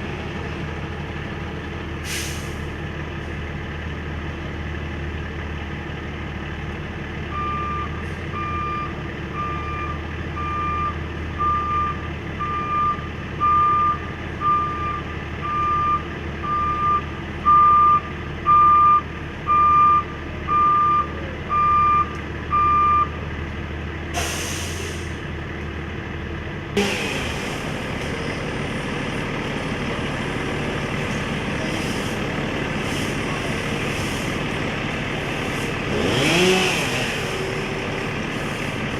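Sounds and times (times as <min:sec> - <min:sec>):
heavy truck idling: 0:00.0 - 0:38.9
reversing alarm beeping: 0:07.3 - 0:23.2.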